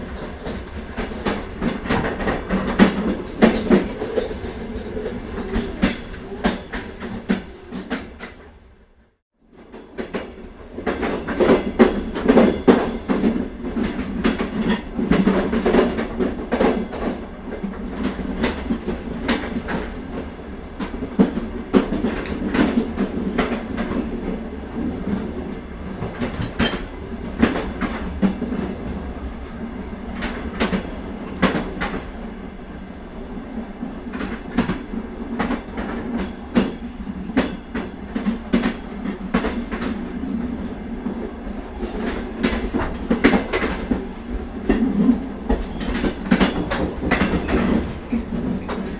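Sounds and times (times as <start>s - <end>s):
train rumble: 0.0s - 48.9s
train wheels clicking over rail joints: 20.8s - 28.7s, 34.1s - 40.2s, 41.1s - 48.9s.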